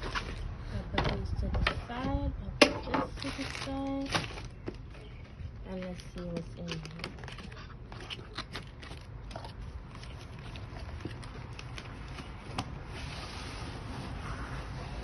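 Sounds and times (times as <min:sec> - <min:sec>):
rustling: 0:03.1 - 0:15.0.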